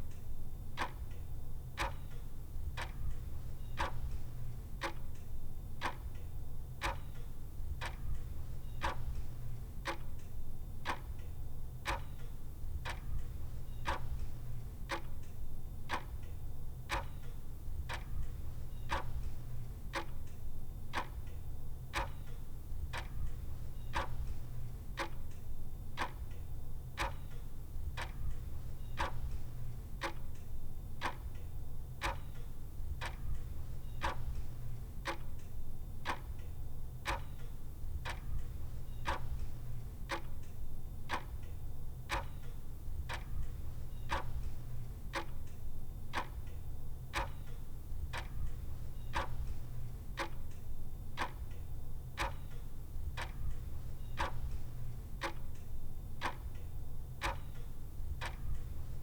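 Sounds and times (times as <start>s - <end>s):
clock ticking: 26.0s - 26.4s, 28.0s - 30.4s, 31.0s - 50.6s, 51.2s - 59.0s.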